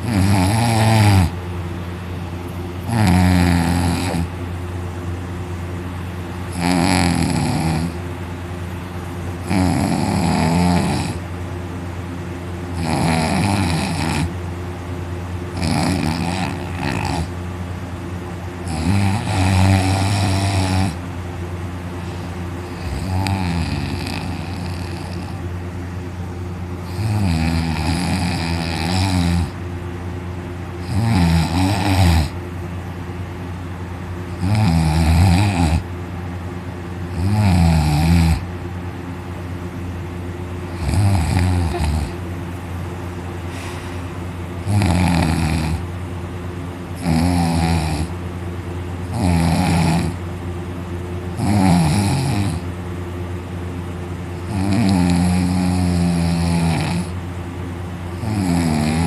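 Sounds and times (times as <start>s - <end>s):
man snoring loudly: 0.0s - 1.4s, 2.9s - 4.4s, 6.5s - 8.0s, 9.4s - 11.2s, 12.7s - 14.3s, 15.5s - 17.3s, 18.6s - 21.0s, 22.6s - 25.4s, 26.8s - 29.6s, 30.8s - 32.4s, 34.3s - 35.9s, 37.1s - 38.5s, 40.7s - 42.2s, 44.6s - 45.9s, 47.0s - 48.2s, 49.1s - 50.2s, 51.4s - 52.7s, 54.4s - 57.2s, 58.1s - 59.0s
steady low hum: 0.0s - 59.0s.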